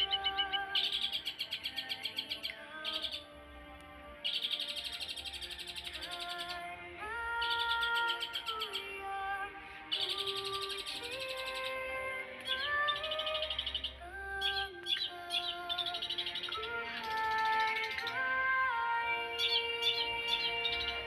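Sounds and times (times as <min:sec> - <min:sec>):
soft background music: 0:00.0 - 0:21.0
bird singing chattering trills: 0:12.5 - 0:18.1.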